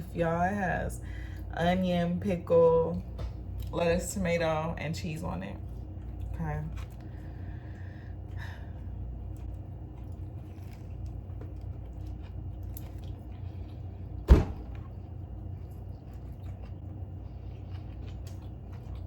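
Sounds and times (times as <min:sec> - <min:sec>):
low hum: 0:00.0 - 0:19.0
person chewing: 0:05.7 - 0:19.0
loud thump: 0:14.3 - 0:14.8.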